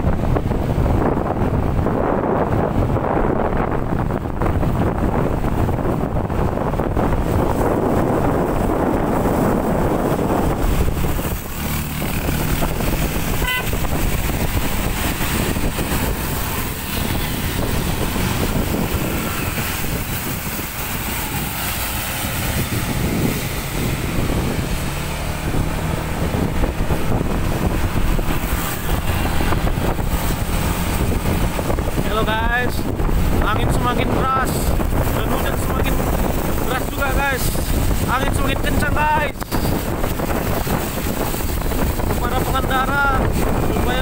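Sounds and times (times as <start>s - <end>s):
road traffic passing: 0.0s - 44.0s
storm wind on microphone: 0.0s - 44.0s
heavy rain: 6.4s - 33.5s
short horn toot: 13.3s - 13.8s.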